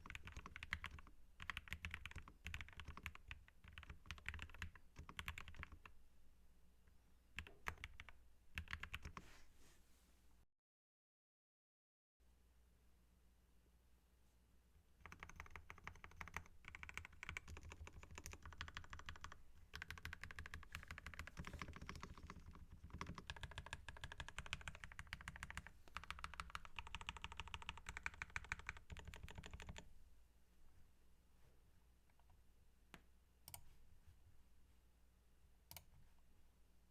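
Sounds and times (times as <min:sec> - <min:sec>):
mechanical keyboard typing: 0:00.0 - 0:05.9, 0:07.4 - 0:09.2, 0:15.0 - 0:29.9.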